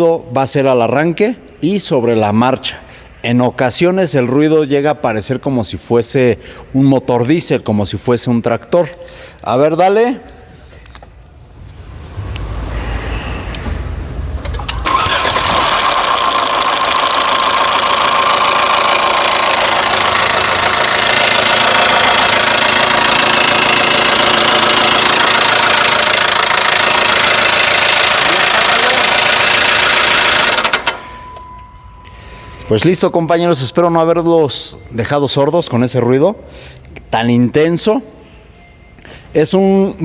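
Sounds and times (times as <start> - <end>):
loud mechanical engine noise: 12.0 - 31.6
starter cranking engine: 14.3 - 31.4.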